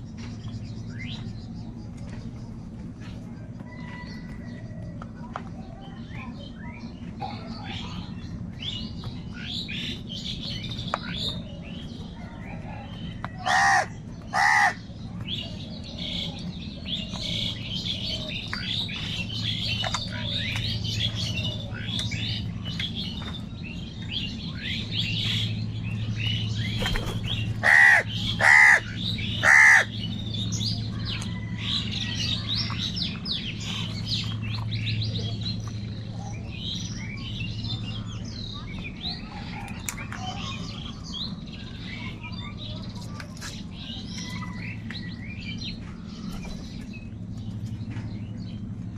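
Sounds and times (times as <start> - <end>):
small birds chirping: 0.0 - 48.9
steady low hum: 0.0 - 48.9
crows cawing: 13.4 - 14.8, 27.6 - 30.0.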